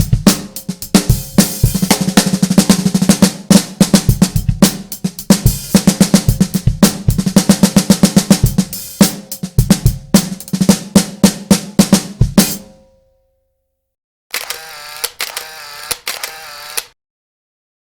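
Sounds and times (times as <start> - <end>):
snare drum rolls: 0.0 - 12.7.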